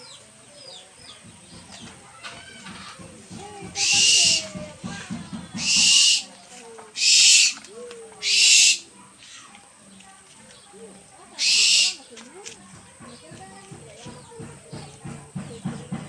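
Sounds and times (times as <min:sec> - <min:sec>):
owl hissing screeches: 0:03.8 - 0:04.5, 0:05.6 - 0:06.3, 0:07.0 - 0:07.6, 0:08.2 - 0:08.9, 0:11.4 - 0:12.0.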